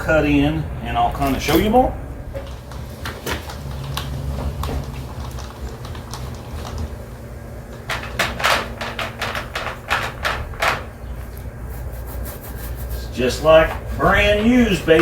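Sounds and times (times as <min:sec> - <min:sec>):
steady low hum: 0:00.0 - 0:15.0
paintbrush scratchy strokes: 0:11.6 - 0:14.8.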